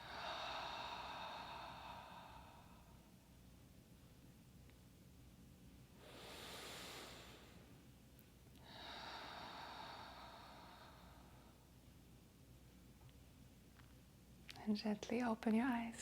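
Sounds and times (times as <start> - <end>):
woman breathing in through nose: 0.0 - 3.0, 6.0 - 7.7, 8.6 - 11.6.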